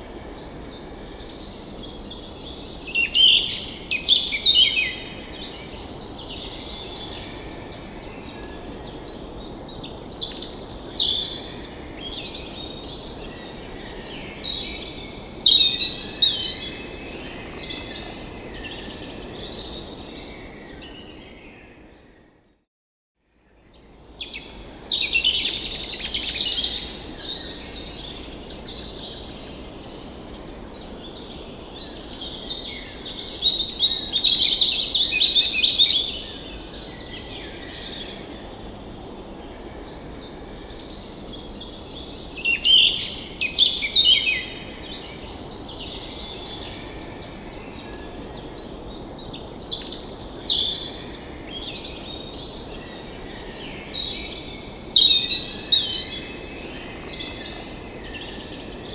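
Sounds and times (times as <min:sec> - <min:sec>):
songbirds singing: 0:23.5 - 0:58.9.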